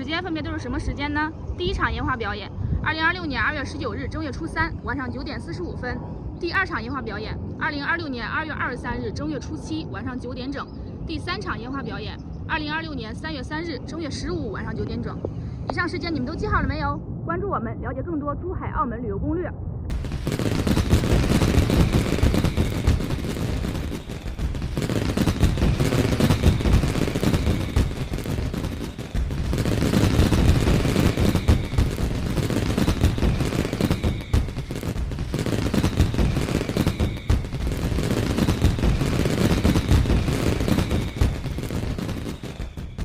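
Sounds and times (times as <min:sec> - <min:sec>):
fireworks crackling and banging: 0:19.9 - 0:43.0.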